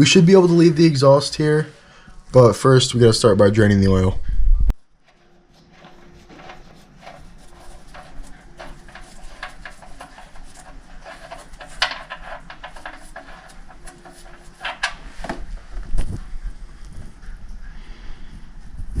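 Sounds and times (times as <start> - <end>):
hand tools and metal parts clanking: 5.1 - 15.5.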